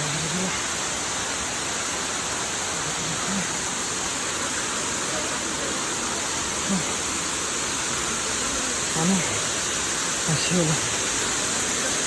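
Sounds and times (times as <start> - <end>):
person's voice: 0.0 - 0.8, 2.8 - 3.7, 6.6 - 7.0, 8.8 - 9.6, 10.2 - 11.1
waterfall rushing: 0.0 - 12.0.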